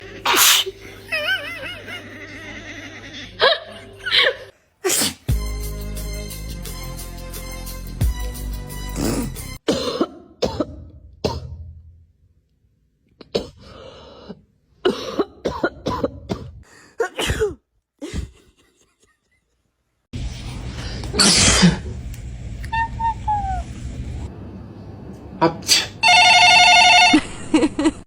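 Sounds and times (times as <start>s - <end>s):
person sneezing: 0.2s - 0.9s, 4.8s - 5.3s, 9.0s - 10.2s, 16.4s - 18.3s, 21.1s - 21.9s, 25.6s - 26.0s.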